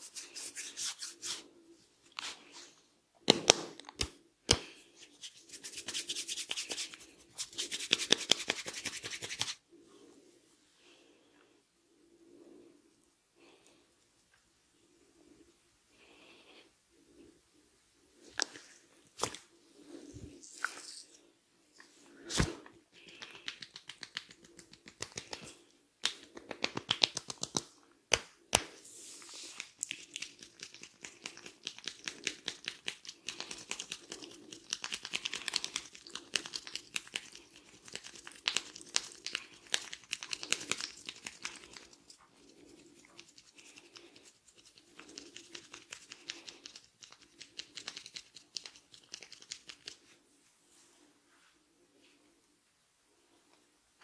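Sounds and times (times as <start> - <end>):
hands rustling hair: 4.5 - 9.6, 18.2 - 51.1.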